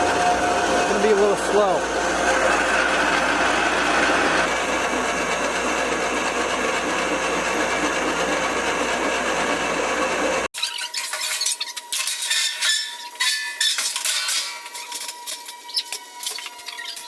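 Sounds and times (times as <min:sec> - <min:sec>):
electric winch motor running: 0:00.0 - 0:10.5.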